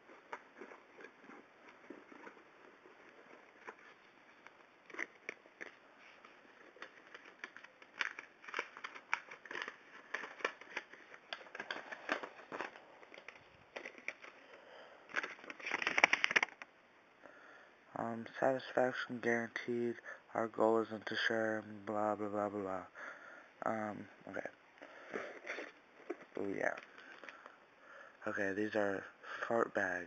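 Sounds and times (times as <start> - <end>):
packaging crinkling and tearing: 0.0 - 16.6.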